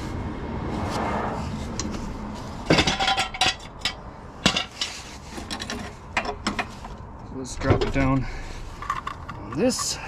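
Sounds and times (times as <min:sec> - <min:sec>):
metal tools clanking: 0:02.7 - 0:06.8, 0:07.5 - 0:10.0.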